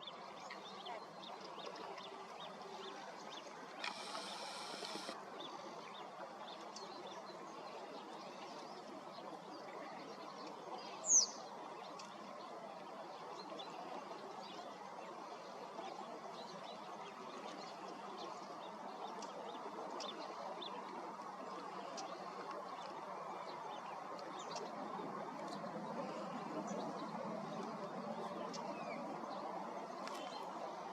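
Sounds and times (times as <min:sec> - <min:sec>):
brief hiss: 0:03.8 - 0:05.2.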